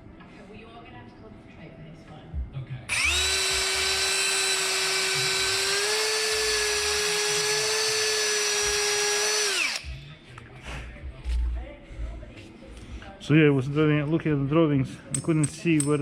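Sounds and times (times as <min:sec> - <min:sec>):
power drill whining: 0:02.9 - 0:10.0.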